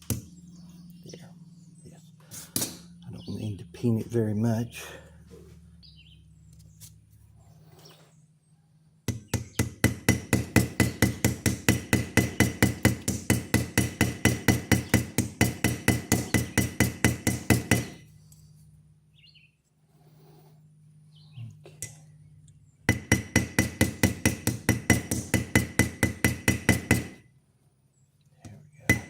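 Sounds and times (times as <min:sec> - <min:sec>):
small hammer tapping metal: 0:09.1 - 0:18.0, 0:22.9 - 0:27.2.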